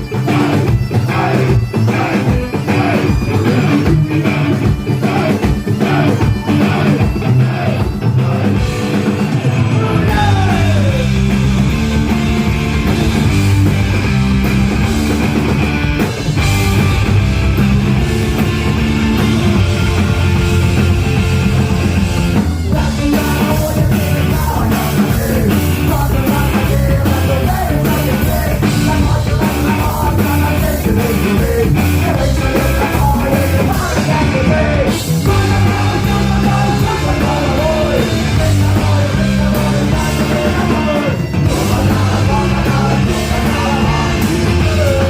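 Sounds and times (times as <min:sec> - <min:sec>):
shouted singing: 0:00.0 - 0:08.8, 0:09.5 - 0:11.4, 0:22.7 - 0:45.0
punk rock band playing live: 0:00.0 - 0:45.0.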